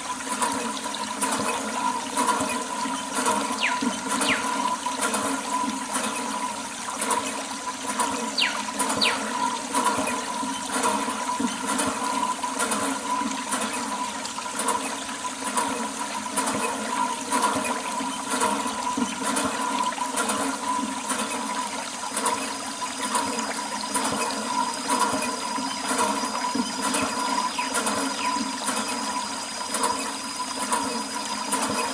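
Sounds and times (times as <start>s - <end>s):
running splashing water: 0.0s - 31.9s.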